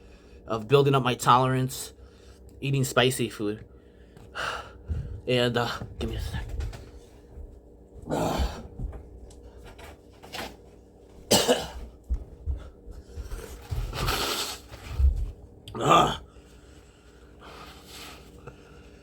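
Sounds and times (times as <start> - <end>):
man breathing hard: 3.7 - 5.3
man coughing: 11.3 - 11.9.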